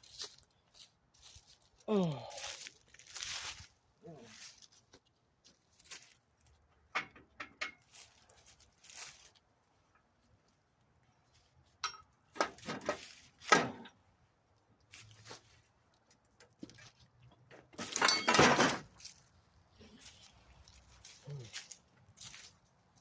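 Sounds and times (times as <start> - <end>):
metal parts clinking and knocking: 17.7 - 19.0.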